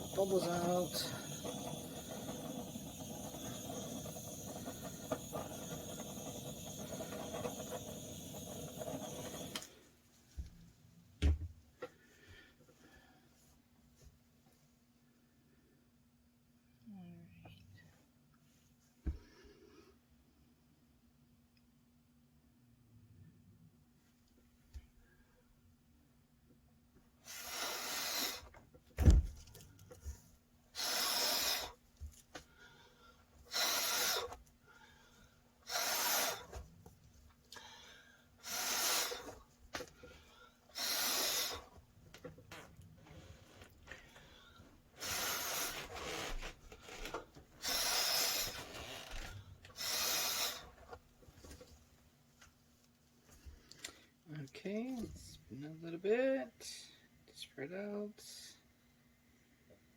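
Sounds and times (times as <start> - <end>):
hissing rush of air: 0.0 - 9.6, 30.8 - 31.7, 33.5 - 34.3, 38.4 - 39.3, 40.8 - 41.7, 45.0 - 45.9, 47.6 - 48.6, 49.8 - 50.7.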